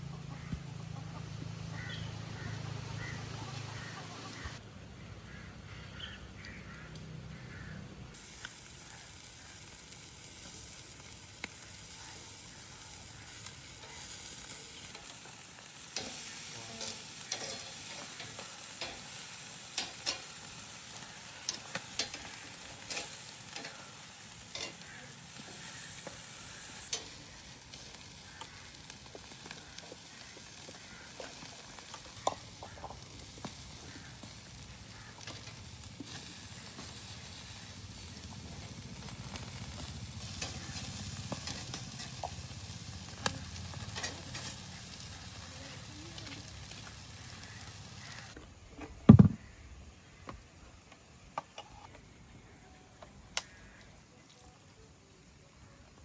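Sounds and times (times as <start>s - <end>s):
food sizzling in a pot: 5.3s - 48.4s.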